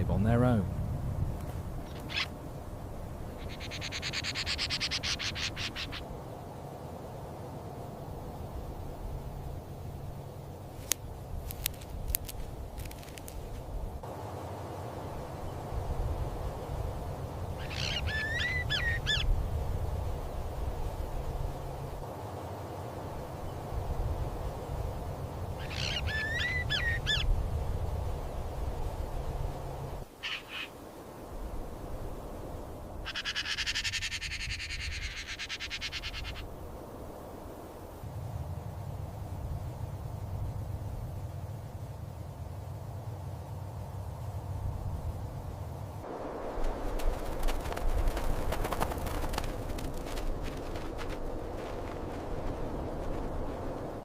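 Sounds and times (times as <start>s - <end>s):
bird rapid pulsing trill: 3.3s - 6.1s, 17.5s - 19.4s, 25.6s - 27.4s, 33.0s - 36.5s
bird chirping: 3.4s - 6.1s.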